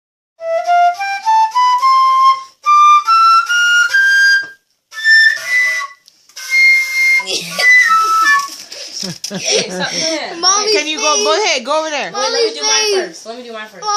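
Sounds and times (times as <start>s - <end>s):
flute playing scale runs: 0.4s - 8.6s.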